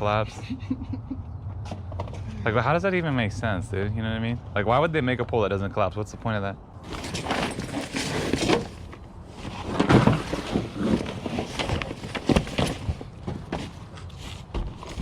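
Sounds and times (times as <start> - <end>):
knocks and clunks: 6.8 - 15.0.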